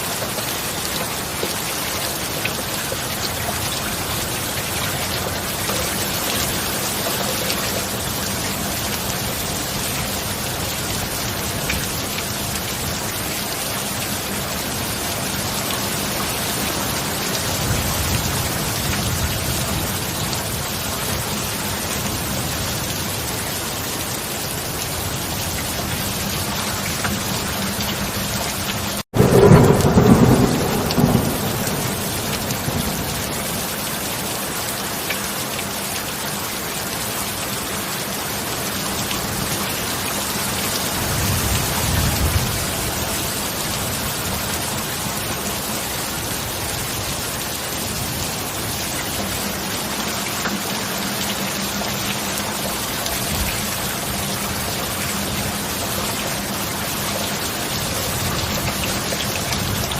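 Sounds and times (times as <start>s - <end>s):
heavy rain: 0.0s - 59.9s
loud thunderclap: 29.2s - 33.6s
low thunder rumble: 29.2s - 33.8s.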